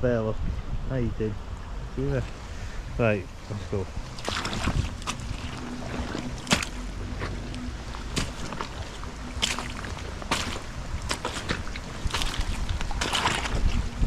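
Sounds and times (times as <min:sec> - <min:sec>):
low rumble: 0:00.0 - 0:14.0
wind buffeting microphone: 0:00.0 - 0:14.0
sharp knocks or splashes: 0:04.2 - 0:13.8.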